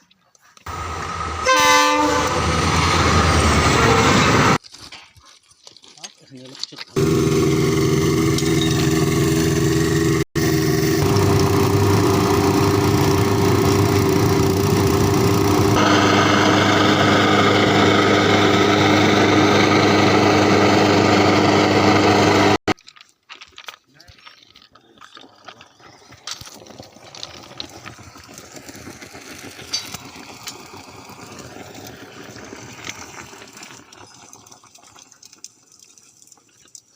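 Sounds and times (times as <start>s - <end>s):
welding machine humming: 7.0s - 22.7s.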